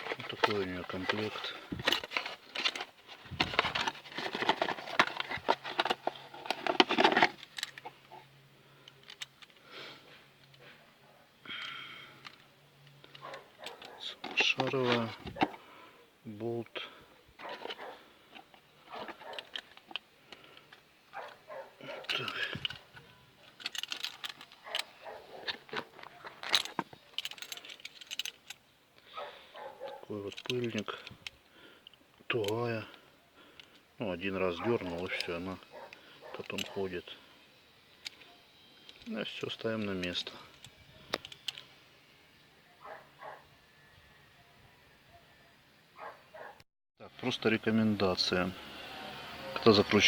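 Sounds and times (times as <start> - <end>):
parts and packaging clattering: 0.0 - 15.8, 16.8 - 28.7, 29.6 - 37.2.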